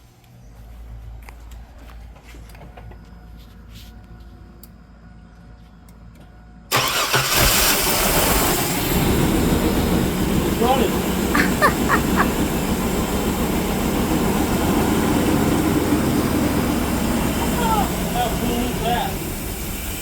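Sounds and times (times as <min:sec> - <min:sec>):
car engine starting and running: 0:06.7 - 0:20.0.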